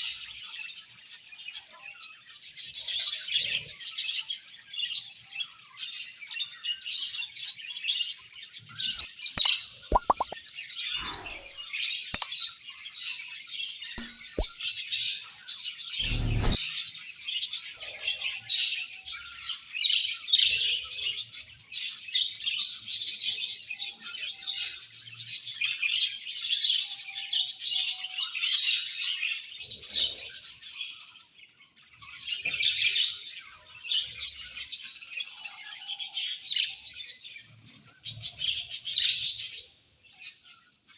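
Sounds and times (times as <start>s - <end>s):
sharp clicks: 9.4s - 10.4s.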